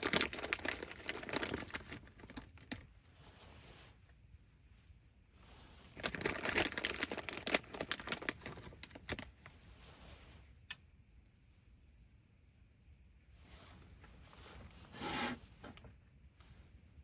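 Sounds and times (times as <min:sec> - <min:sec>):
rapid crinkling and clicking: 0:00.0 - 0:02.9, 0:06.0 - 0:09.5.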